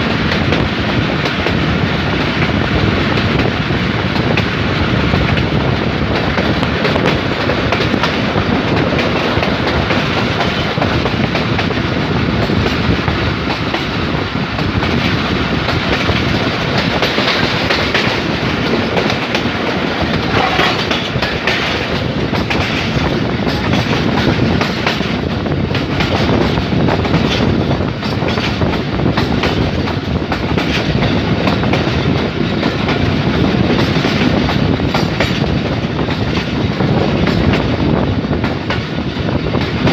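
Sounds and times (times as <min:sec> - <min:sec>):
train coaches rolling: 0:00.0 - 0:39.9
wheels clicking over rail joints: 0:12.4 - 0:37.8.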